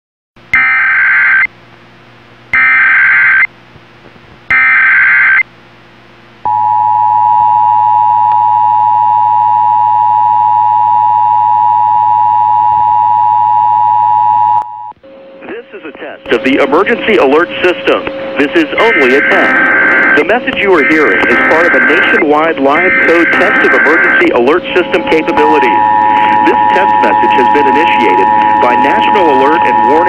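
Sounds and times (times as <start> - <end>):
steady low hum: 0.4 - 30.0
two-tone attention signal: 0.5 - 1.5, 18.8 - 30.0
digital data screech: 16.3 - 30.0
faint extra tones: 17.9 - 30.0.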